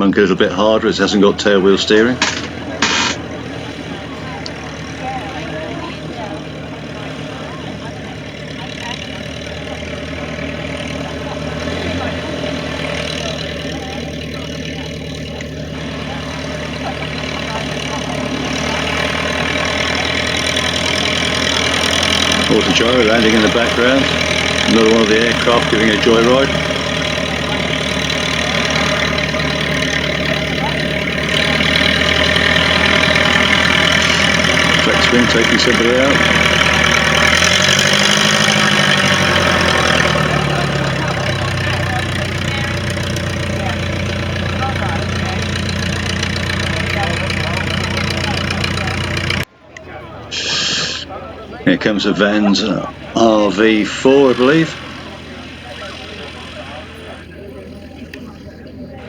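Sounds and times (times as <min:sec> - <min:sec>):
light aircraft engine running: 0:00.0 - 0:59.0
propeller and air hiss: 0:02.2 - 0:03.6, 0:50.3 - 0:51.2.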